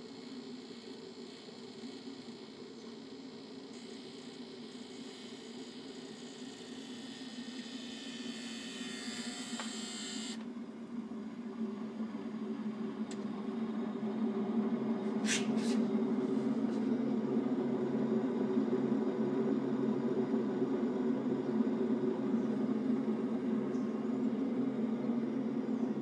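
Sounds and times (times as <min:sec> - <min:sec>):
sauna low drone: 0:10.5 - 0:26.0.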